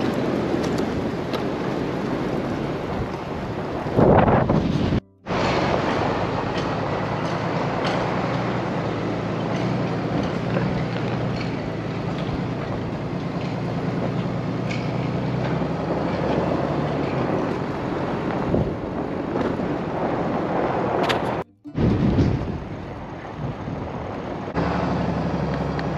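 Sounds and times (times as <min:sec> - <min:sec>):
wind blowing on microphone: 0:00.0 - 0:11.5, 0:15.8 - 0:24.6
low engine hum: 0:00.0 - 0:25.9.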